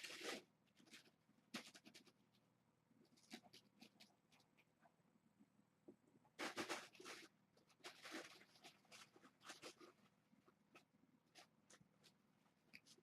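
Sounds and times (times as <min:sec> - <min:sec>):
faint scratchy rustling: 0:06.4 - 0:13.0.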